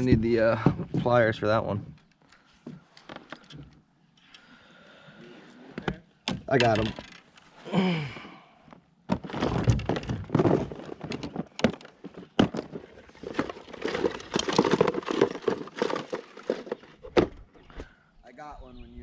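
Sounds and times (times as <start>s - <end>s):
knocks thunks and rattles: 5.9s - 7.2s, 9.1s - 17.6s.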